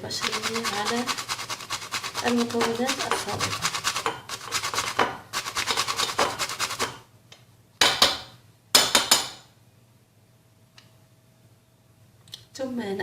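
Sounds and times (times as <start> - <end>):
nutmeg rasping on a grater: 0.0 - 6.9.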